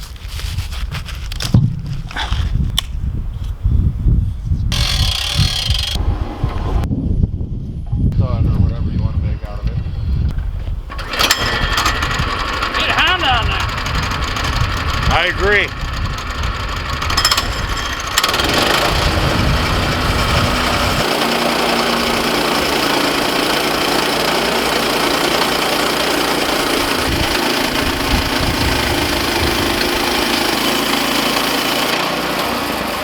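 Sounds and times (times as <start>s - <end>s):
bandsaw mill cutting log: 4.7s - 6.8s, 10.9s - 33.0s.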